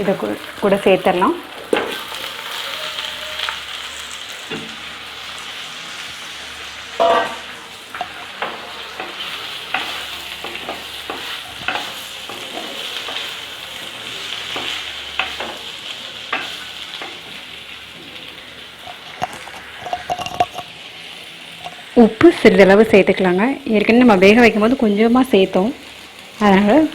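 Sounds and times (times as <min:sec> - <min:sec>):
food sizzling in oil: 0:00.0 - 0:26.9
spoon scraping clay pot: 0:18.8 - 0:20.7.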